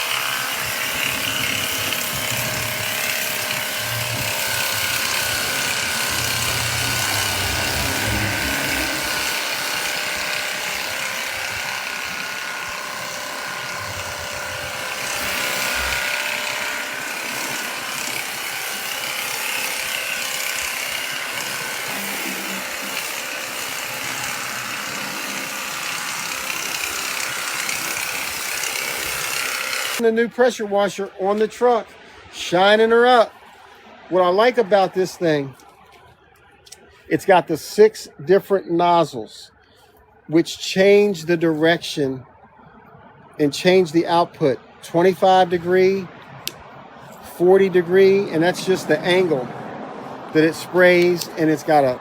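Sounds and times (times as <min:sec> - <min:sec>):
pressure washer motor humming: 0:00.0 - 0:30.0.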